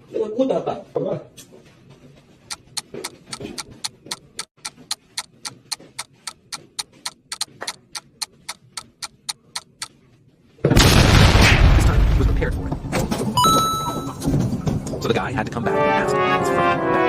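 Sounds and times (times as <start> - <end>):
sharp ticking clicks: 2.5 - 10.0.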